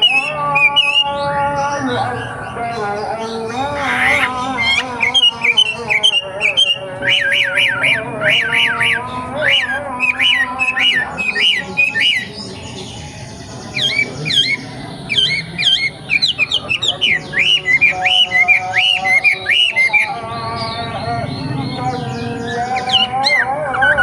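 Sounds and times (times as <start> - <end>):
songbird chirping rapidly: 0.0 - 24.0.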